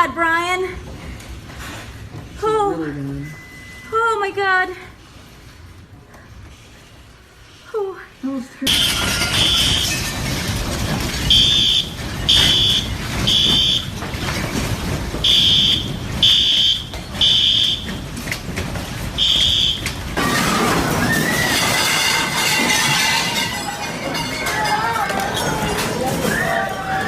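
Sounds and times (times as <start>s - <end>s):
background clatter: 0.0s - 7.7s, 8.6s - 27.0s
smoke alarm beeping: 3.2s - 4.1s, 11.2s - 14.0s, 15.2s - 18.1s, 19.2s - 20.1s.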